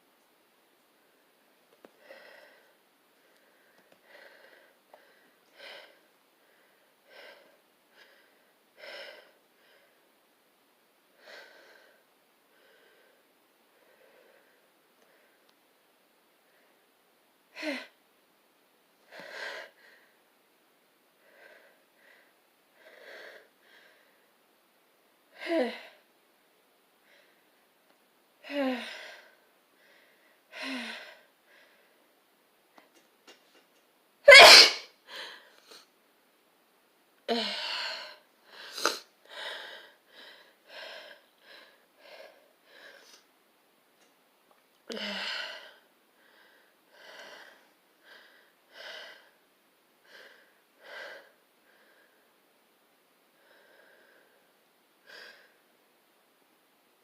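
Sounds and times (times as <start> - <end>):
person sneezing: 34.3 - 35.0, 38.6 - 39.1.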